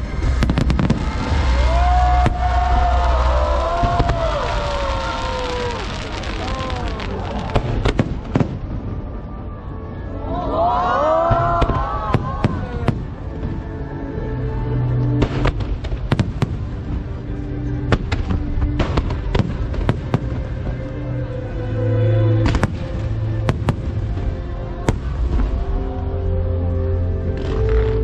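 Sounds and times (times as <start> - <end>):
loud show music: 0.0 - 7.0, 14.8 - 28.0
fireworks bangs: 0.0 - 9.2, 15.2 - 17.2, 17.9 - 20.8, 22.4 - 25.7.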